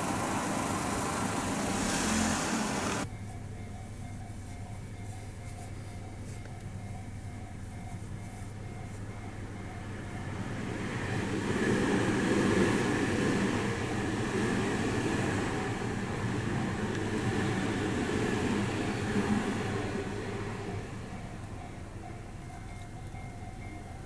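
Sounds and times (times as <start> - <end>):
train wheels rumbling: 0.0 - 3.2, 8.5 - 24.0.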